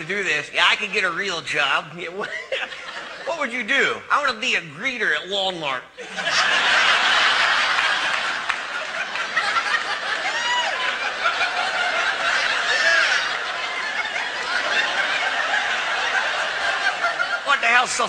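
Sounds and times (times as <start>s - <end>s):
audience laughing: 2.1s - 3.7s, 6.0s - 18.0s.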